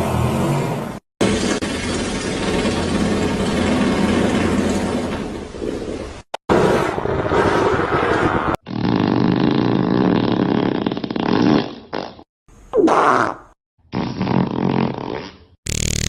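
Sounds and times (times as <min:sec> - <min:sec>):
fart sound effect: 0:06.3 - 0:16.0.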